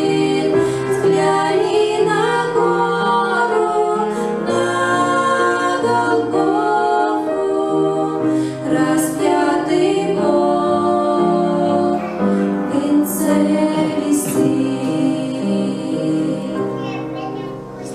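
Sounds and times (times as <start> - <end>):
voices singing: 0.0 - 17.0
instrumental accompaniment: 0.0 - 17.9.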